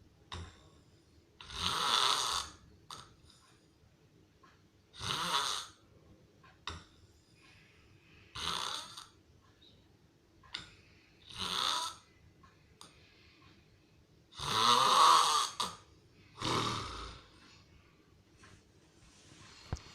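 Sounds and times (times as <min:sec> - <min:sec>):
person snoring loudly: 0:01.4 - 0:02.6, 0:05.0 - 0:05.8, 0:08.4 - 0:09.1, 0:11.3 - 0:12.0, 0:14.4 - 0:15.8, 0:16.4 - 0:17.3.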